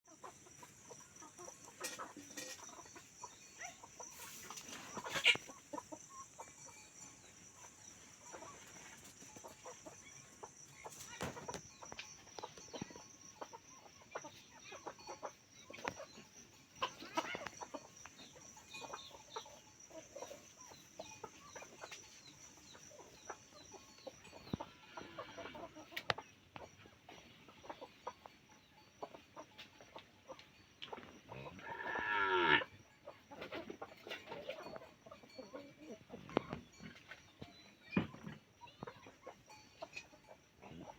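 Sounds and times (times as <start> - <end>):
chickens clucking: 0.1 - 40.9.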